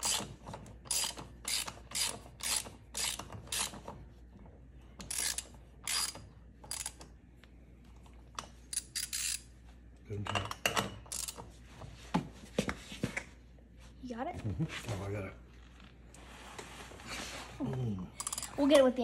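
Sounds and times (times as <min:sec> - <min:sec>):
ratchet pawl clicking: 0:00.9 - 0:03.7, 0:05.0 - 0:07.0, 0:08.7 - 0:09.4, 0:18.2 - 0:18.5.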